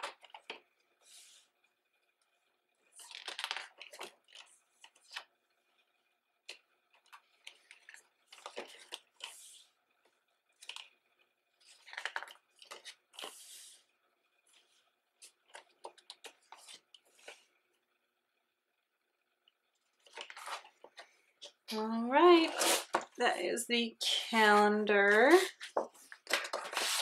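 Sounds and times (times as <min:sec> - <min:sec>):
calendar pages flipping: 0:00.0 - 0:01.5, 0:02.8 - 0:05.4, 0:06.5 - 0:11.0, 0:11.6 - 0:17.5, 0:19.9 - 0:23.2, 0:24.4 - 0:27.0.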